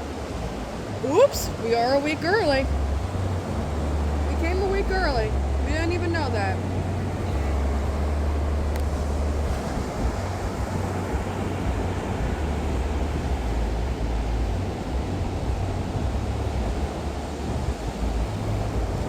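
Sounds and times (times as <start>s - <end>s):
ocean surf washing: 0.0s - 19.0s
wind rumble on microphone: 0.0s - 19.0s.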